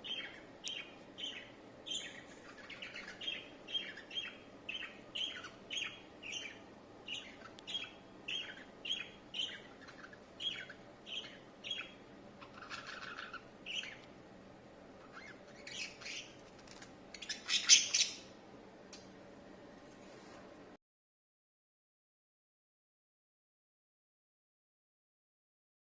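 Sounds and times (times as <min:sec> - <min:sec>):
budgerigars chirping: 0:00.0 - 0:14.0, 0:15.0 - 0:18.3.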